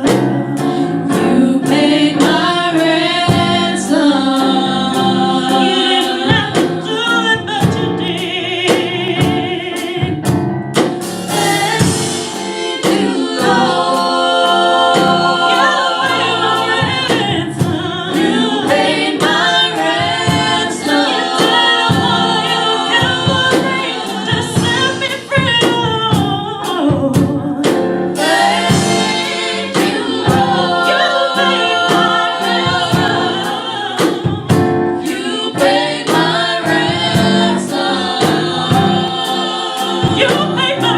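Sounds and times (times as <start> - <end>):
vocal group singing in harmony: 0.0 - 10.4, 11.0 - 40.9.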